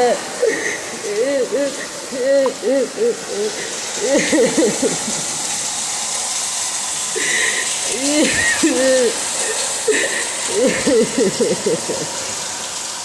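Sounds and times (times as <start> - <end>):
woman wailing: 0.0 - 5.2, 7.9 - 9.2, 9.9 - 12.1
water gushing from pipe: 0.0 - 13.0.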